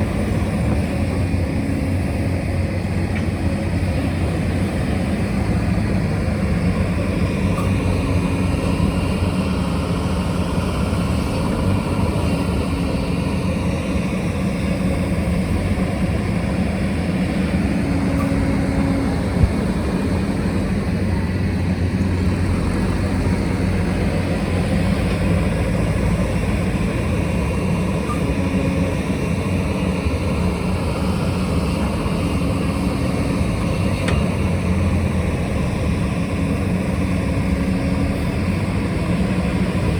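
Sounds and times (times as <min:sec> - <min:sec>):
diesel engine of construction machine: 0:00.0 - 0:39.9.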